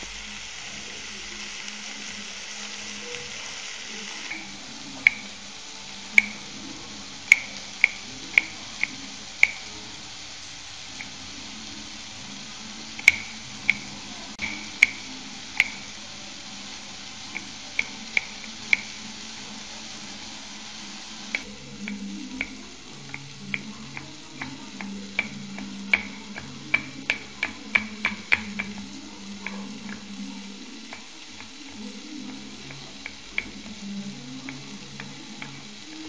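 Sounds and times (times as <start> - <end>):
steady hiss: 0.0 - 36.0
utensil tapping against dish: 4.2 - 5.4, 6.1 - 6.6, 7.2 - 9.8, 11.0 - 11.2, 13.0 - 16.0, 17.3 - 19.0, 21.3 - 33.8, 34.4 - 36.0.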